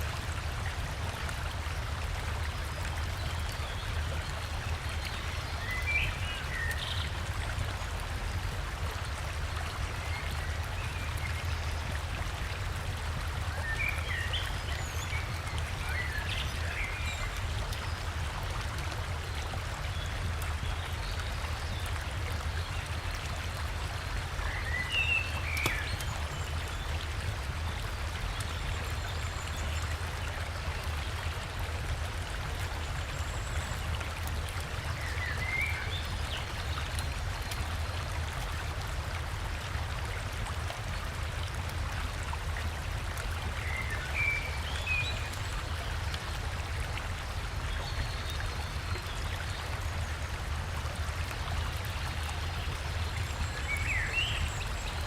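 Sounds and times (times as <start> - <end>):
river water rushing: 0.0 - 55.0.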